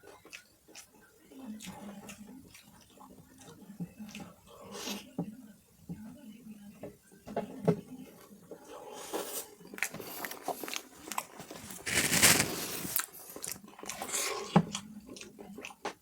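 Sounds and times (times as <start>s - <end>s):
close chewing with mouth clicks: 0.0s - 5.0s, 8.9s - 16.0s.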